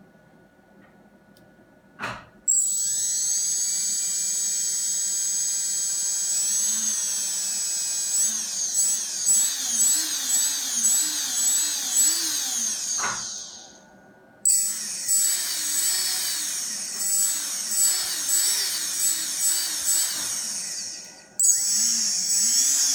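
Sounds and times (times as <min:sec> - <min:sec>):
click: 0:00.8 - 0:01.5
drone motor high-pitched screech: 0:02.5 - 0:13.8, 0:14.5 - 0:22.9.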